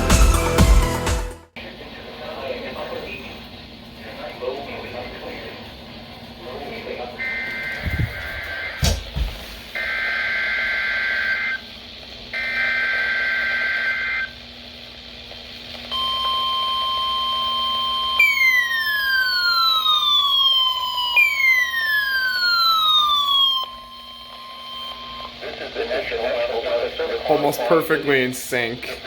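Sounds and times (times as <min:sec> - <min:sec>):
steady alarm tone: 0:07.1 - 0:09.0, 0:09.7 - 0:11.7, 0:12.3 - 0:14.5, 0:15.9 - 0:26.3
falling siren-like sweep: 0:16.4 - 0:25.3.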